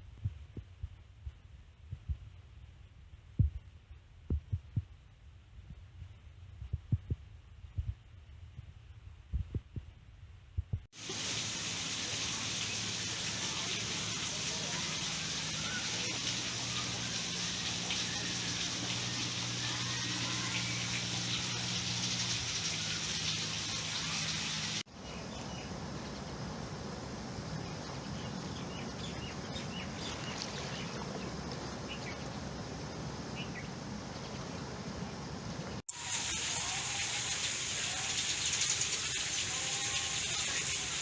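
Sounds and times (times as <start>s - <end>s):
rain hissing: 11.0s - 41.0s.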